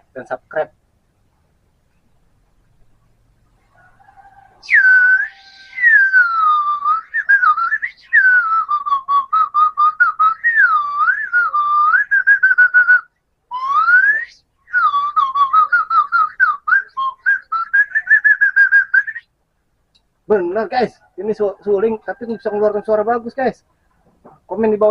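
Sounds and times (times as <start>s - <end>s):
flute imitating birdsong: 4.6s - 19.2s.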